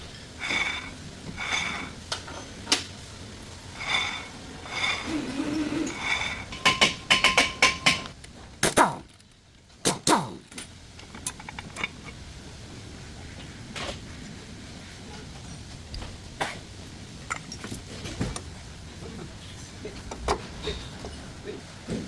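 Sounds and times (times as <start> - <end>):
brakes squealing: 0.0 - 7.2.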